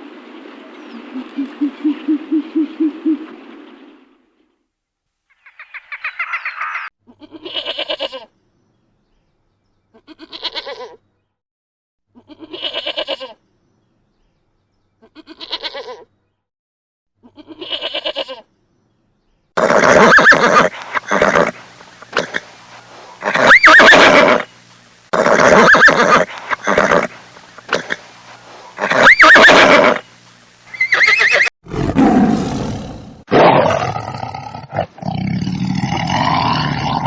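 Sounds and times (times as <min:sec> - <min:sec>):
farm animal bleating: 0:07.1 - 0:08.3, 0:09.9 - 0:11.0, 0:12.2 - 0:13.4, 0:15.0 - 0:16.1, 0:17.2 - 0:18.5, 0:19.6 - 0:24.4, 0:25.1 - 0:30.0, 0:30.7 - 0:31.5.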